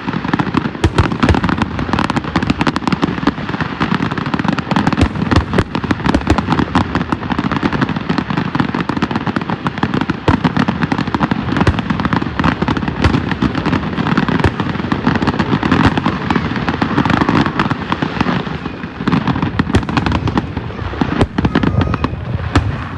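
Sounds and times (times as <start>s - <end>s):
fireworks bangs: 0.0s - 22.9s
booming rumble: 11.4s - 22.9s.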